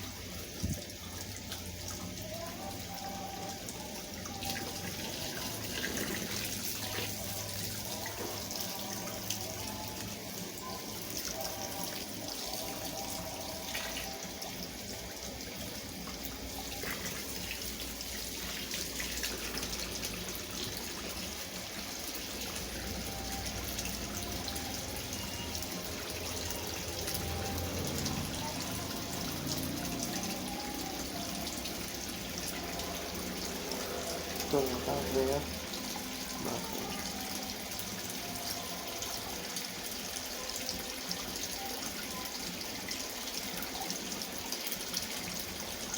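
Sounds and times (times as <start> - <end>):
washing machine low hum: 0.0 - 45.9
water rushing in washing machine: 0.0 - 45.9.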